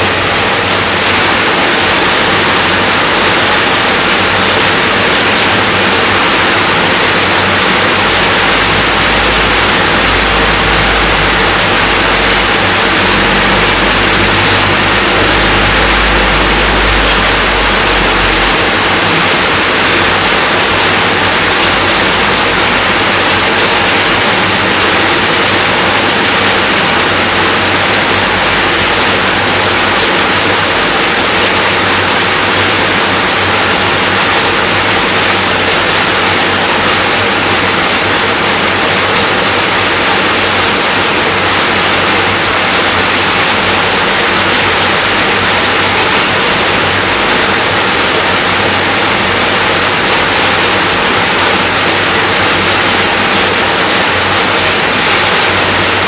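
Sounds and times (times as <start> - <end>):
steady rainfall: 0.0 - 56.0
low rumble: 7.9 - 20.8.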